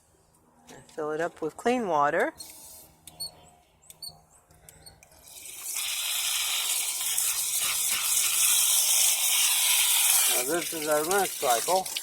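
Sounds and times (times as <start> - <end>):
water gushing into a tub: 5.2 - 12.0.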